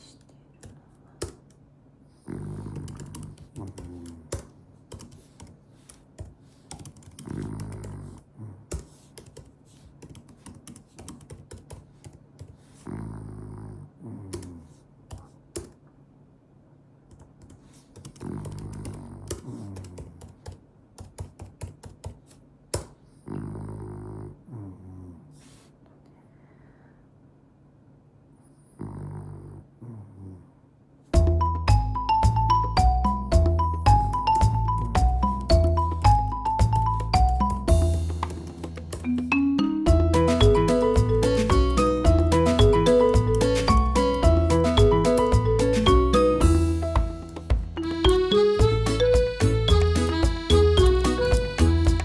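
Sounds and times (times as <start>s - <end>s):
dog snoring: 2.1s - 4.2s, 7.2s - 8.6s, 12.8s - 14.6s, 18.2s - 20.0s, 23.2s - 25.5s, 28.5s - 30.5s.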